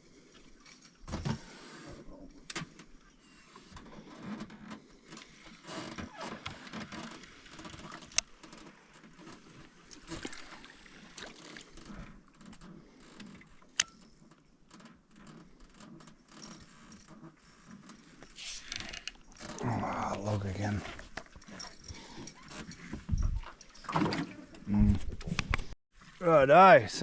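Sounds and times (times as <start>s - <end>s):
fishing reel rattling and clicking: 18.4s - 19.4s.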